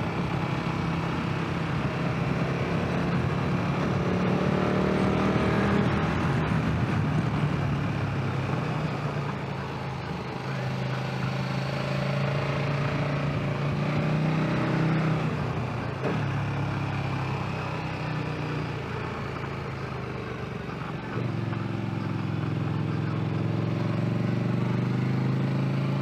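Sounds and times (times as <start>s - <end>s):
rushing wind: 0.0s - 8.7s
motorcycle engine running: 0.0s - 26.0s.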